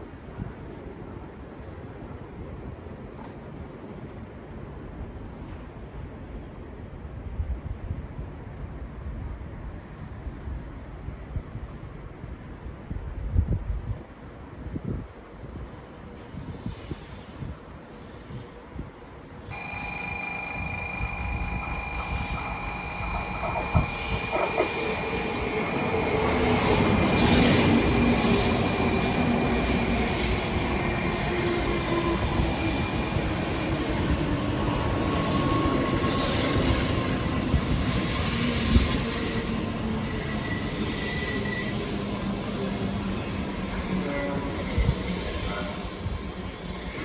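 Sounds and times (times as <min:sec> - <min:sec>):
train wheels and air rumble: 0:00.0 - 0:47.0
train motor whine: 0:19.2 - 0:47.0.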